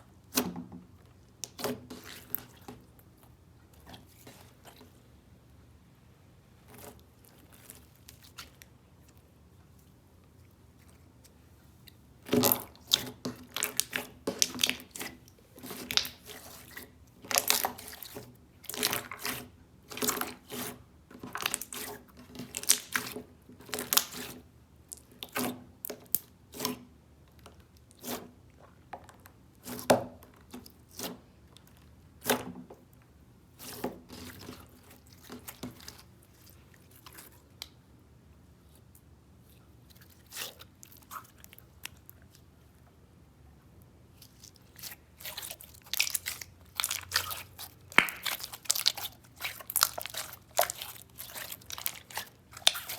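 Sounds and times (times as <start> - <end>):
crunchy material crackling: 44.2 - 52.9.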